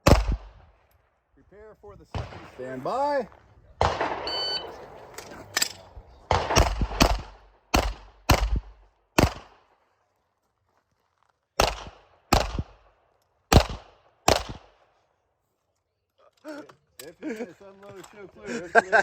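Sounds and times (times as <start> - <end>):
pistol shots: 0.0 - 0.6, 3.8 - 9.7, 11.6 - 12.9, 13.5 - 14.8.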